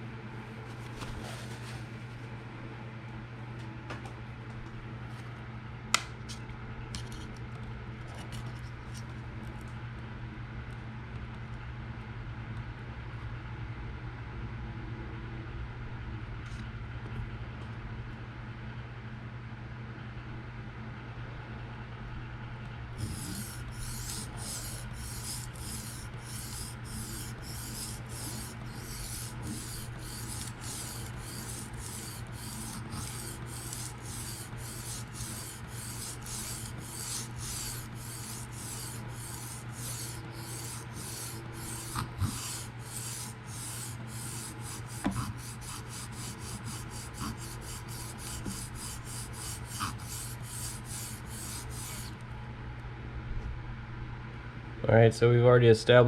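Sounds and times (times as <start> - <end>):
knife rasping on sharpening stone: 23.0 - 52.2.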